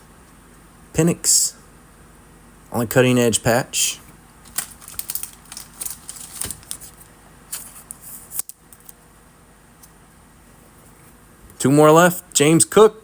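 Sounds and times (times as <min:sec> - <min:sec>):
trading cards clicking and rustling: 0:04.4 - 0:09.0.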